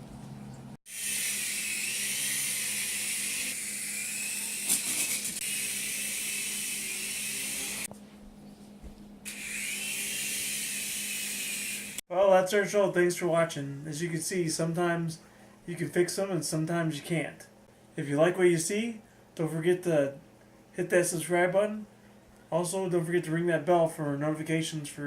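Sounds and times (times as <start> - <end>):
toy helicopter motor whine: 0.9 - 7.9, 9.3 - 12.0.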